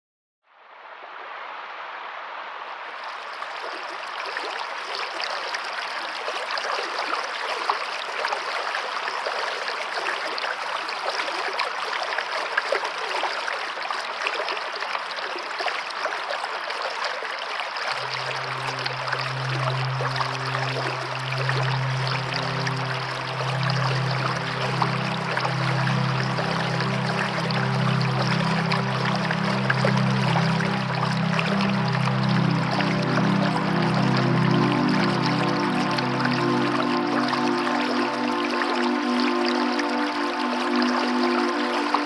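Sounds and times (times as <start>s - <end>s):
water flowing and splashing: 1.0s - 42.0s
low background music note: 18.0s - 42.0s.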